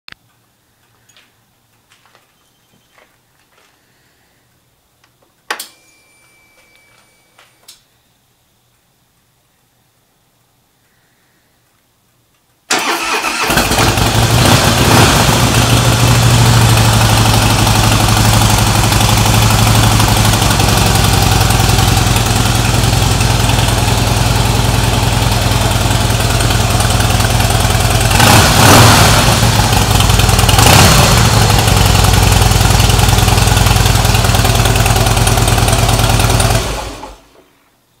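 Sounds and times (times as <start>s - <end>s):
motorcycle engine revving: 12.8s - 37.2s
motorcycle engine idling: 13.8s - 37.2s.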